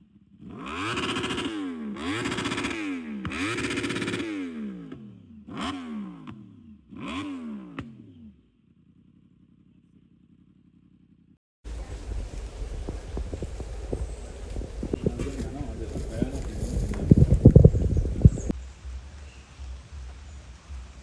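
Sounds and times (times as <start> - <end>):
motorcycle engine revving: 0.0 - 18.6
motorcycle engine idling: 8.5 - 18.5.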